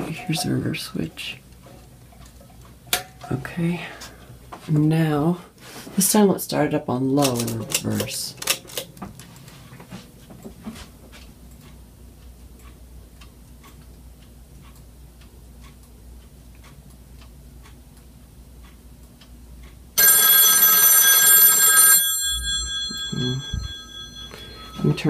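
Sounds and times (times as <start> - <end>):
telephone ringing: 20.0 - 25.0.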